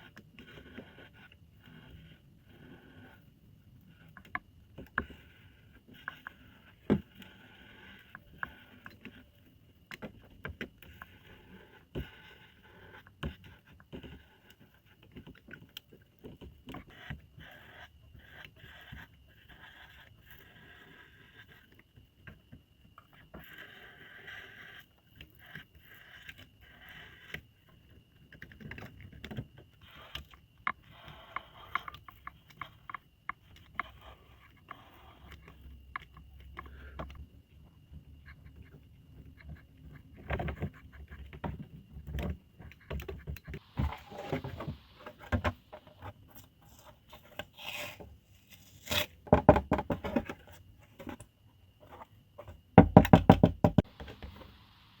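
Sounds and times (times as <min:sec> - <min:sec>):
tools scraping and clicking on plastic: 0:03.2 - 0:37.3, 0:38.0 - 0:53.1
faint high whine: 0:43.6 - 0:48.9.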